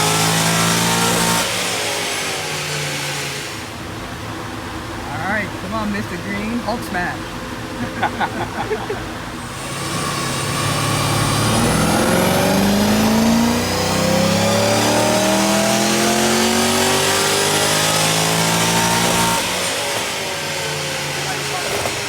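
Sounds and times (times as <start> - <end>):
engine revving at full throttle: 0.0 - 3.8, 9.4 - 22.0.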